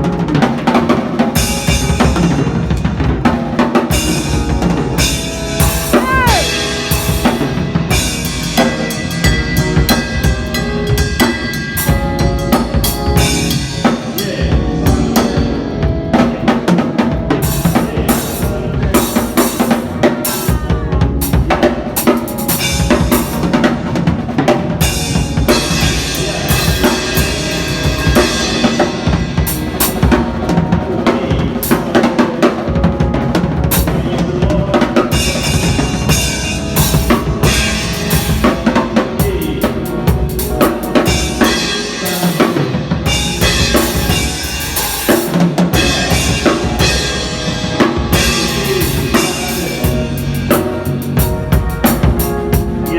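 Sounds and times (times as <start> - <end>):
drum kit solo: 0.0 - 52.9
sustained keyboard notes: 0.0 - 52.9.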